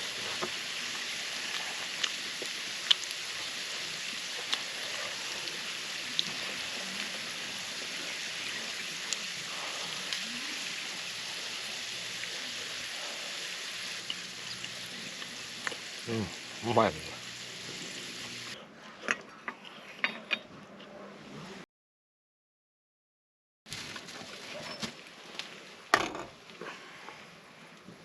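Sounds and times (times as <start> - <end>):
food sizzling in a pan: 0.0 - 18.6.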